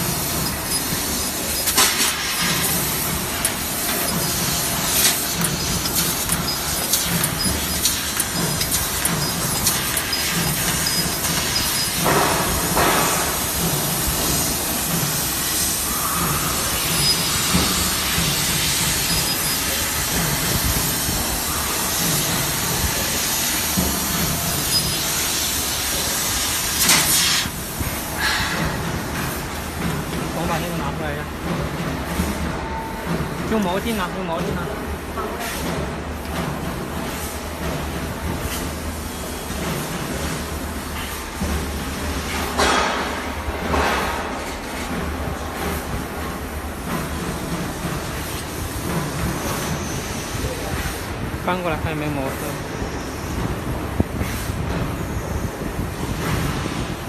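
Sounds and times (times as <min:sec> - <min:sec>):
laser cutter hissing and popping: 0:00.0 - 0:32.4.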